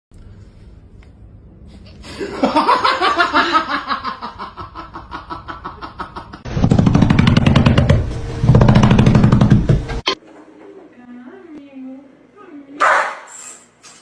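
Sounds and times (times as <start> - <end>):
person laughing: 2.1 - 6.5
loud low rattling noise: 6.5 - 10.0.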